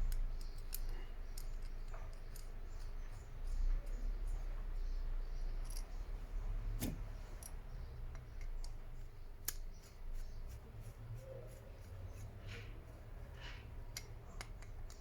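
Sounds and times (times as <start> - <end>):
light clicks and taps: 0.0 - 4.4, 6.8 - 10.0, 11.8 - 15.0.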